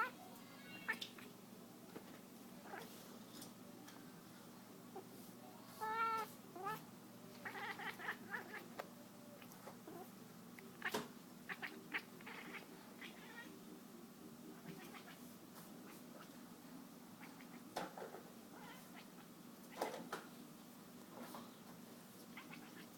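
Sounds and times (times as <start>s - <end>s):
cat meowing: 0.0s - 1.2s, 5.8s - 6.8s, 7.4s - 8.7s, 11.5s - 13.6s, 18.6s - 19.2s, 22.4s - 22.9s
cat chirping calls: 0.0s - 1.3s, 5.8s - 8.8s, 10.7s - 13.6s, 14.6s - 15.2s, 18.6s - 19.3s, 22.4s - 22.9s.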